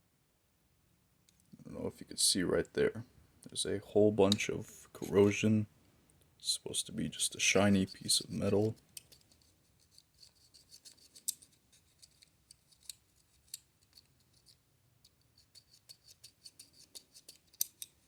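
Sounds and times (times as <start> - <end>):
hands handling plastic toy: 7.8 - 18.0.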